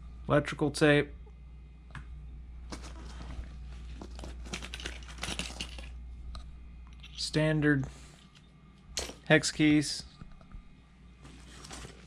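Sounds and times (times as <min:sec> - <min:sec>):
steady low hum: 0:00.0 - 0:12.0
hand tools clinking and rustling: 0:04.0 - 0:05.9, 0:11.3 - 0:12.0.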